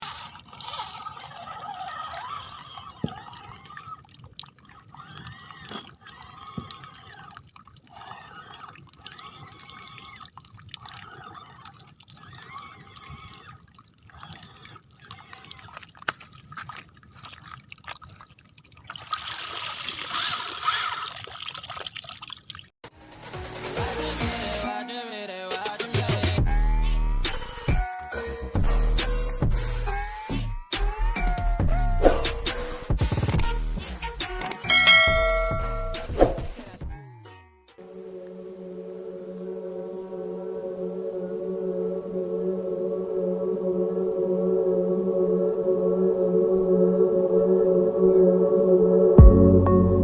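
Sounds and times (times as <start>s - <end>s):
water trickling and dripping: 0.0s - 22.8s.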